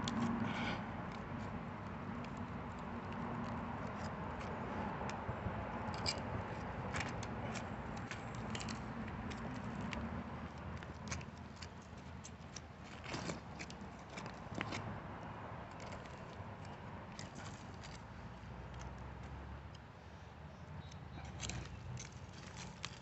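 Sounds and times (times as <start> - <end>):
tool scraping in dirt: 10.9 - 14.9.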